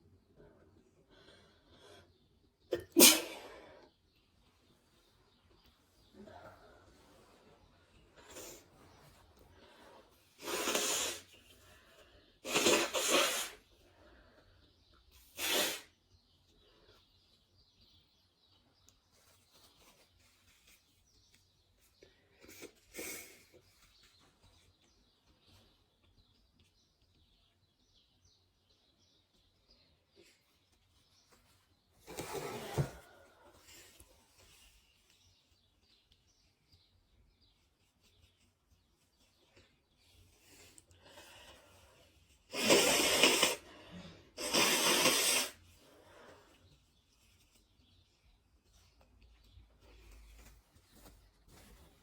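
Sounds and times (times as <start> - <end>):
birds chirping: 0.0 - 52.0
person sneezing: 2.7 - 3.6, 44.4 - 45.6.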